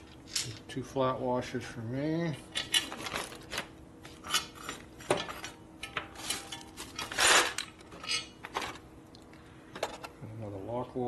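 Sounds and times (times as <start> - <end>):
bolts and washers clinking: 4.3 - 8.8.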